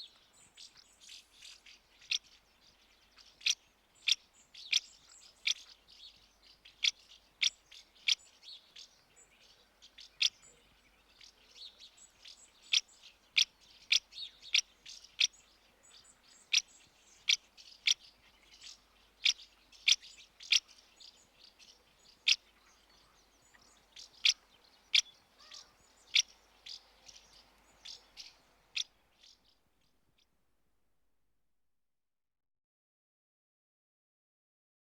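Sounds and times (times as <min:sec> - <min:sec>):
soft bird twittering: 0:00.0 - 0:29.6
birds chirping sharply: 0:11.1 - 0:29.6.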